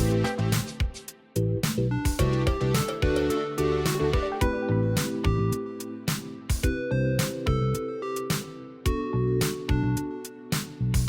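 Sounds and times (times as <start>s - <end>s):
bass line: 0.0s - 0.8s, 1.4s - 5.6s
synth chords: 0.0s - 1.5s.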